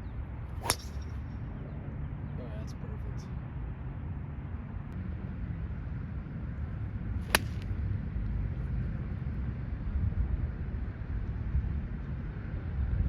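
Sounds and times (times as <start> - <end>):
golf club striking ball: 0.6 - 1.2, 7.3 - 7.8
wind rumble on microphone: 3.4 - 13.0.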